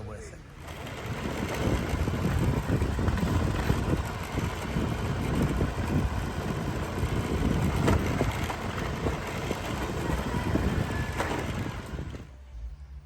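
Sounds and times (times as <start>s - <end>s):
vehicle engine rumbling: 0.0s - 13.0s.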